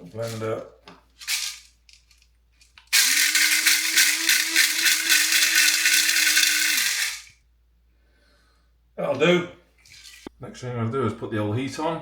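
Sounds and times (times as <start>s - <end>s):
peppercorns rattling in blender: 1.2s - 2.1s, 2.8s - 7.3s
blender motor running: 3.0s - 7.3s.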